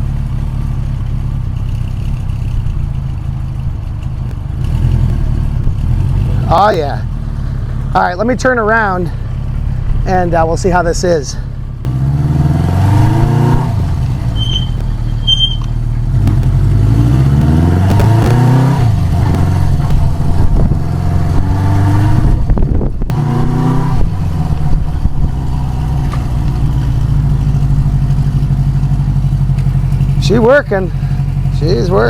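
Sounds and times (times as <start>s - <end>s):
motorcycle engine revving: 0.0s - 32.0s
high squeaks: 14.2s - 15.8s.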